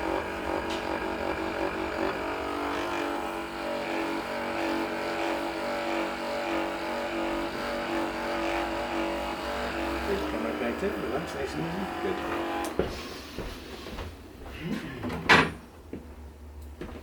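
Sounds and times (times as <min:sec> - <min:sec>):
small electric motor running: 0:00.0 - 0:12.8.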